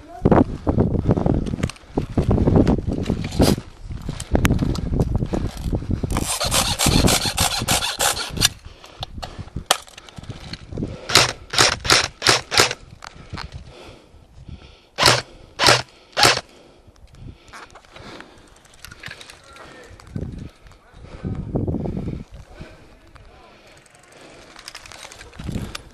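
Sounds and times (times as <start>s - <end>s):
airsoft gunfire rattling: 6.2s - 8.5s, 11.1s - 12.8s, 15.0s - 16.4s.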